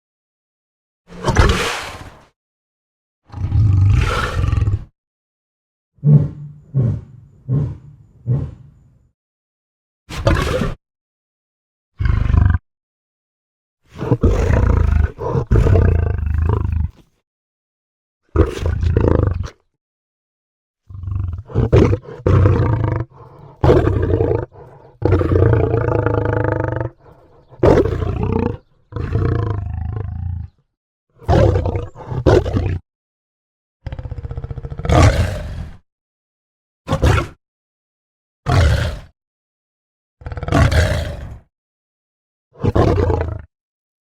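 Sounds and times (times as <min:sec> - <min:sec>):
big cat roars and growls: 0:01.1 - 0:02.4, 0:03.2 - 0:04.9, 0:06.0 - 0:09.1, 0:10.1 - 0:10.8, 0:12.0 - 0:12.6, 0:13.9 - 0:17.2, 0:18.3 - 0:19.7, 0:20.8 - 0:32.8, 0:33.8 - 0:35.8, 0:36.9 - 0:37.4, 0:38.4 - 0:39.2, 0:40.2 - 0:41.5, 0:42.5 - 0:43.5.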